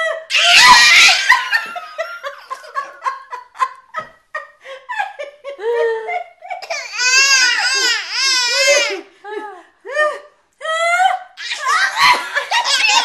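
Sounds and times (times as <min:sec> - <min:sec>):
baby giggling: 0:11.4 - 0:13.0.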